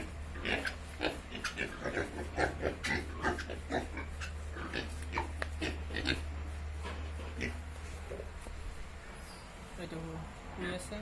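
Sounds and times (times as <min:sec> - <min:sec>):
pigs grunting: 0:00.0 - 0:06.4, 0:07.2 - 0:08.3.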